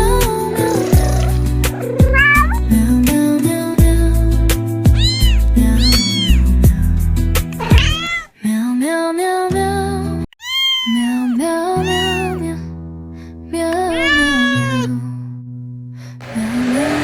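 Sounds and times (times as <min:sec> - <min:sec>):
background music: 0:00.0 - 0:07.6
cat meowing: 0:00.5 - 0:02.6, 0:04.9 - 0:06.6, 0:07.6 - 0:08.3, 0:10.4 - 0:12.5, 0:13.8 - 0:15.0.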